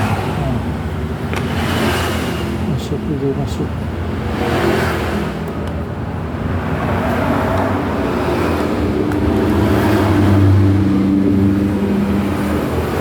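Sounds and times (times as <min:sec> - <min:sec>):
engine humming: 0:00.0 - 0:13.0.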